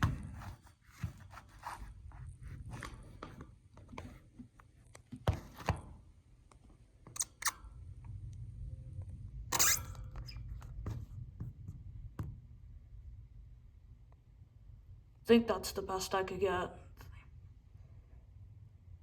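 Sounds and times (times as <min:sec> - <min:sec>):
handling rustles and scrapes: 0:00.0 - 0:06.0.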